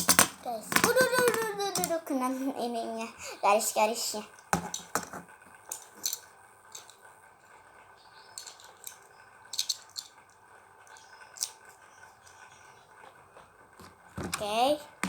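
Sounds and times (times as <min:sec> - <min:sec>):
small objects clicking and rustling: 0:00.0 - 0:02.1, 0:04.3 - 0:07.6, 0:08.2 - 0:15.0
faint steady hiss: 0:00.0 - 0:15.0.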